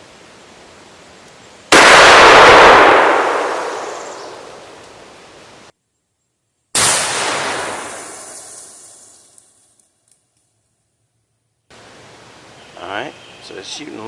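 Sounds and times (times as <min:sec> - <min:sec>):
shotgun blasts echoing: 0:01.7 - 0:04.8, 0:06.8 - 0:08.6.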